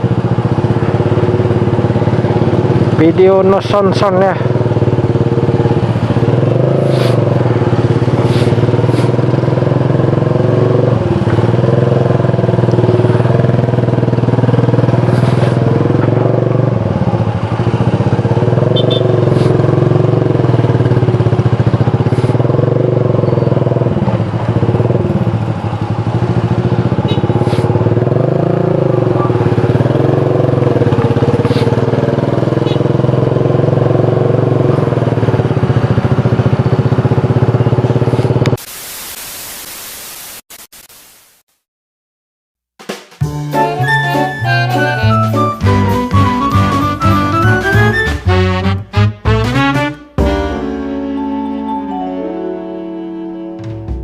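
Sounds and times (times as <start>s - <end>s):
motorcycle engine running: 0.0s - 38.6s.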